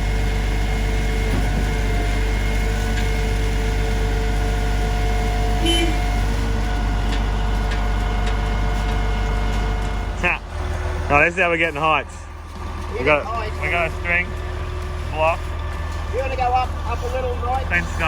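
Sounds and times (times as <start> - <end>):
heavy diesel engine running: 0.0 - 18.0.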